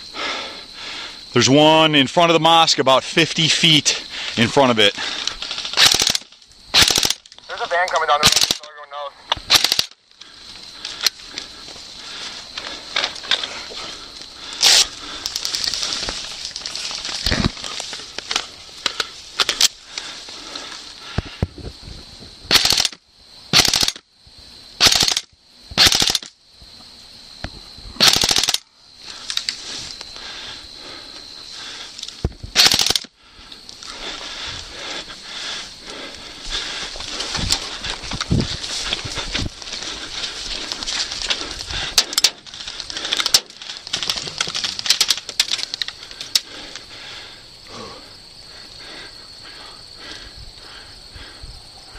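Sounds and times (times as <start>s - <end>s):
airsoft guns firing: 5.5s - 7.3s, 8.2s - 8.7s, 9.4s - 10.0s, 22.5s - 24.0s, 24.8s - 26.3s, 28.0s - 28.6s, 32.6s - 33.1s.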